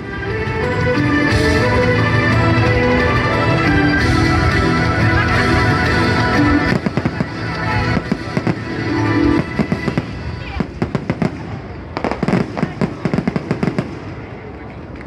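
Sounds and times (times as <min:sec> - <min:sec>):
music with held notes: 0:00.0 - 0:10.9
fireworks cracking and banging: 0:06.6 - 0:15.0.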